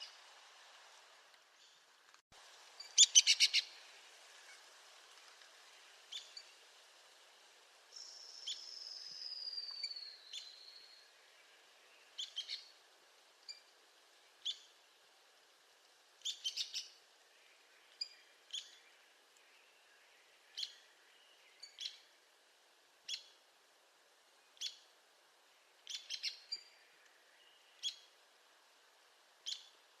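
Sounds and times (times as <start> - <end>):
woodpecker calls: 2.9 - 3.7.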